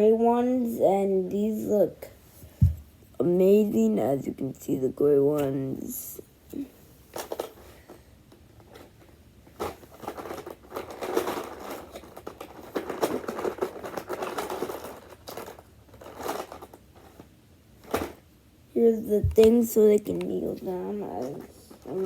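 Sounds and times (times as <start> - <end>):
plastic packaging crinkling: 9.6 - 18.2.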